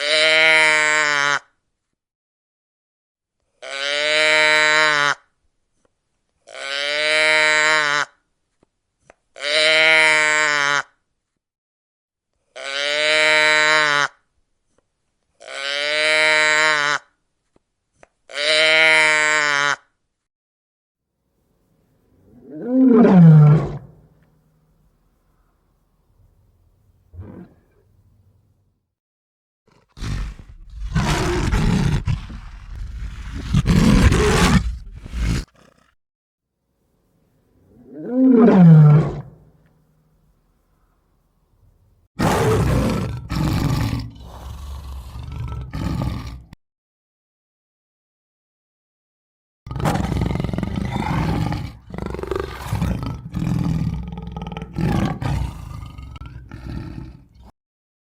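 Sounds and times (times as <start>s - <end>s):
large animal roaring: 29.7s - 35.9s
large animal rough call: 29.7s - 36.0s, 49.7s - 57.2s.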